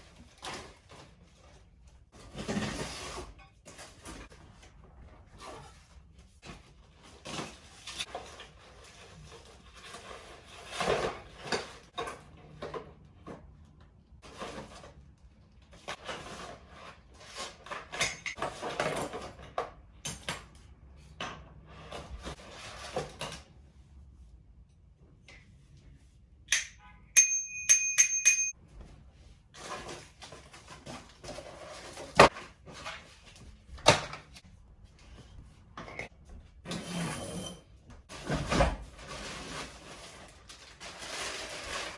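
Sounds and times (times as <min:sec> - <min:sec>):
packaging rustling and scraping: 0:00.0 - 0:12.3, 0:14.2 - 0:19.5, 0:21.7 - 0:23.5, 0:29.0 - 0:35.7, 0:36.7 - 0:41.9
high ringing tone: 0:26.8 - 0:28.5.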